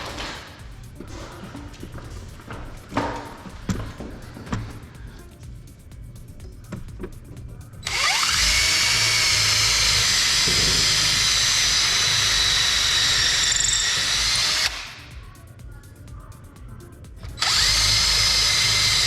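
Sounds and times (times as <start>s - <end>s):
power drill spinning: 7.8s - 15.1s, 17.3s - 19.0s.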